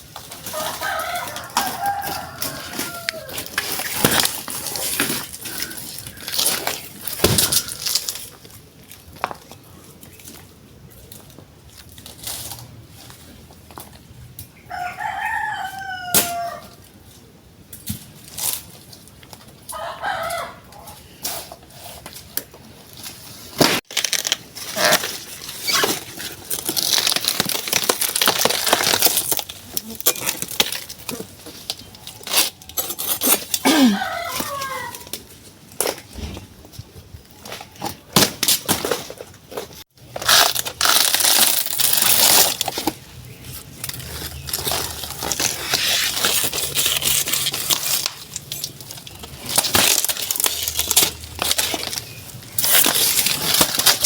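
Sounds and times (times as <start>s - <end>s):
rooster crowing: 0.4s - 3.6s, 14.7s - 16.8s, 19.7s - 21.0s, 33.7s - 35.1s
chickens calling: 33.7s - 35.2s.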